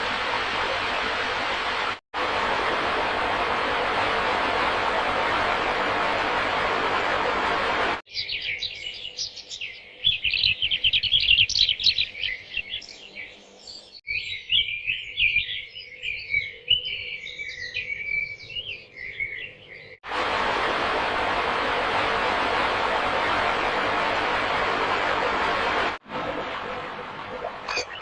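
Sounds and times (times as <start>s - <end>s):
small birds chirping: 8.1s - 20.0s.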